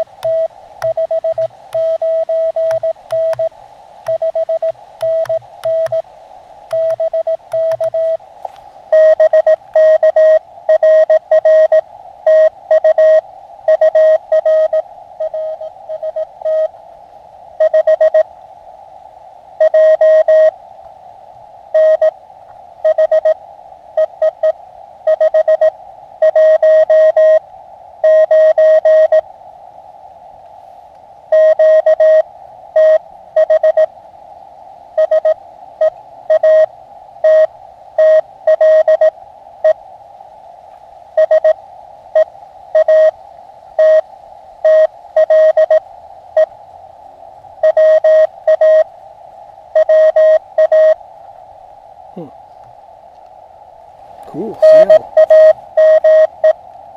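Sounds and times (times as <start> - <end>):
morse code tone: 0.0 - 3.5, 4.1 - 6.0, 6.7 - 8.2, 9.0 - 11.7, 54.3 - 56.6
radio band hiss: 0.0 - 10.4, 54.0 - 56.5.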